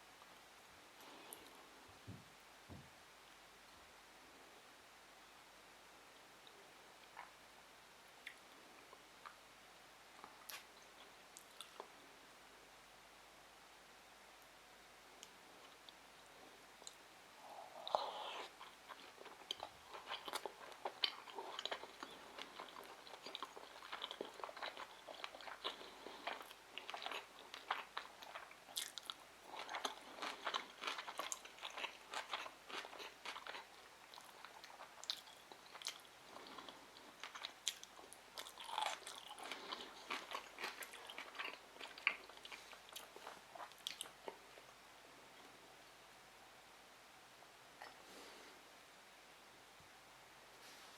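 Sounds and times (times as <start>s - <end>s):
person chewing food: 16.8s - 44.8s.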